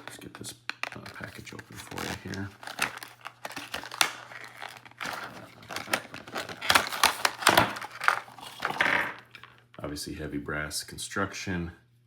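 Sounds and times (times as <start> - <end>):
package being opened: 0.0 - 9.6.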